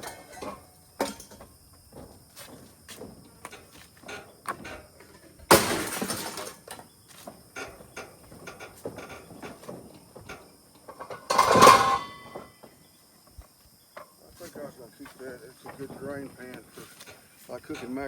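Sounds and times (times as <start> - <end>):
light clanks of metal: 0.0 - 12.8, 15.6 - 18.0
scrap metal crashing onto pile: 5.4 - 6.8, 11.1 - 12.5.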